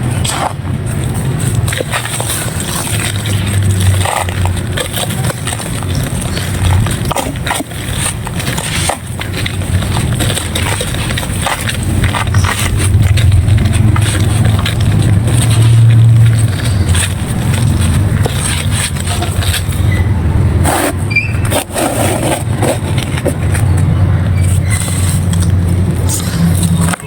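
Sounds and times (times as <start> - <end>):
dry clay crumbling and crunching: 0.0 - 27.0
low rumble: 9.4 - 26.8.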